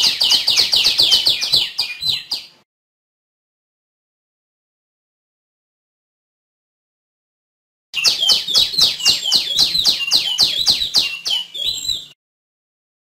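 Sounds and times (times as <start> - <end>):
songbird calling sharp notes: 0.0 - 2.6, 8.0 - 12.2.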